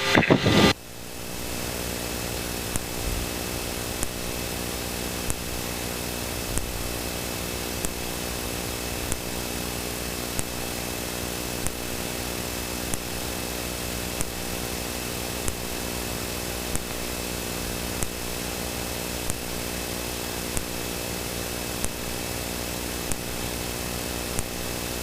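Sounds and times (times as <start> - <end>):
sharp tick: 9.1 - 9.3, 11.6 - 11.8.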